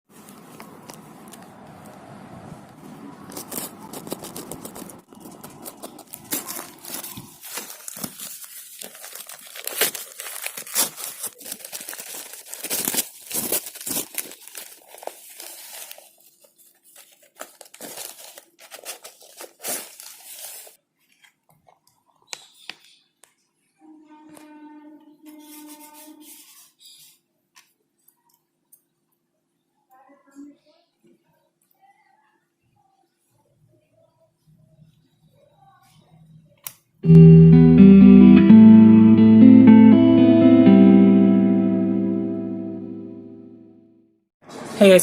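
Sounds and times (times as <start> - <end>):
packaging crinkling and tearing: 3.2 - 21.4.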